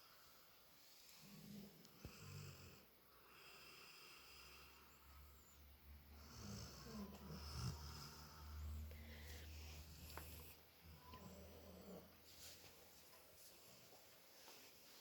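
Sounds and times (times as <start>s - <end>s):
dog snoring softly: 1.1s - 12.4s.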